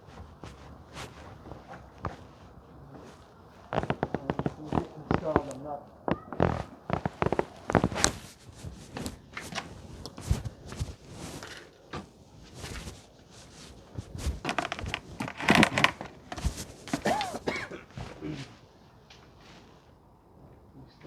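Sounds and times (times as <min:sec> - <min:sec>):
hands and tools rustling: 0:00.0 - 0:19.8.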